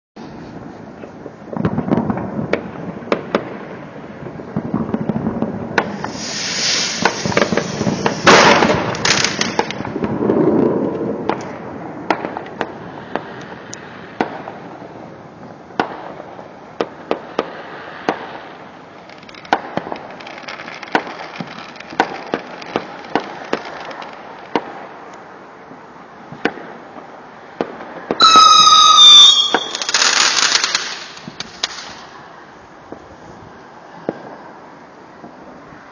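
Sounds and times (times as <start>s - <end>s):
fireworks crackling and banging: 0.2s - 35.9s
firework whistle warbling: 5.9s - 8.6s, 28.2s - 31.2s.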